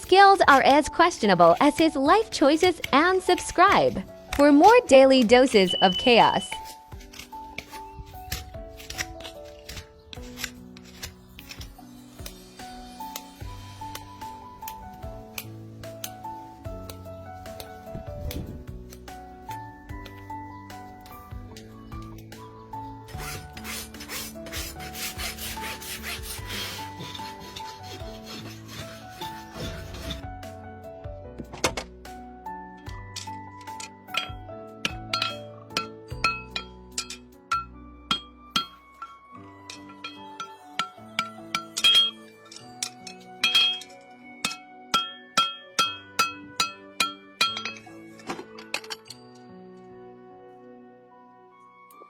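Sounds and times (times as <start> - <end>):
background music: 0.0 - 52.0
rasp filing hoof: 23.0 - 30.4
hammer striking steel: 34.1 - 47.9.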